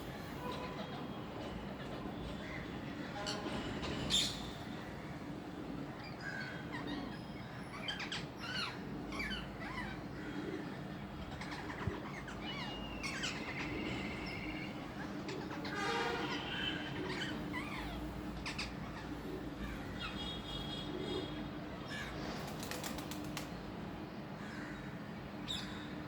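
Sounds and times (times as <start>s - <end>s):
parrots chirping and screeching: 6.0s - 10.1s, 11.2s - 20.2s.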